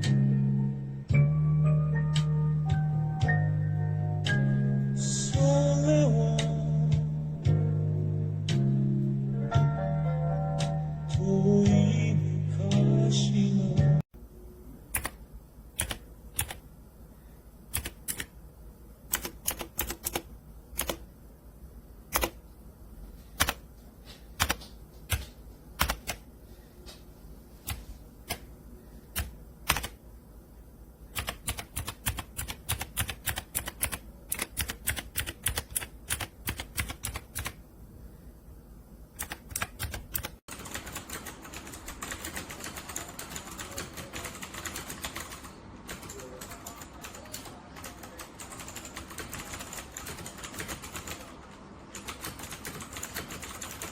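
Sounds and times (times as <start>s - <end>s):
mechanical keyboard typing: 14.9s - 15.2s, 15.8s - 16.6s, 17.7s - 18.3s, 19.1s - 21.1s, 22.1s - 22.4s, 23.4s - 23.6s, 24.4s - 26.3s, 27.7s - 28.5s, 29.1s - 30.0s, 31.2s - 37.6s, 39.2s - 53.9s.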